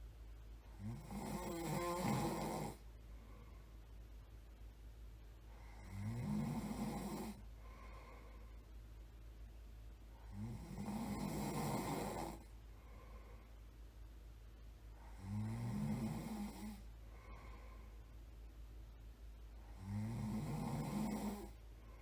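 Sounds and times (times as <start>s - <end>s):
quiet breathing: 0.0s - 4.4s, 5.4s - 14.1s, 14.8s - 22.0s
person snoring: 0.8s - 2.8s, 5.6s - 7.4s, 10.2s - 12.5s, 15.0s - 17.5s, 19.7s - 21.6s.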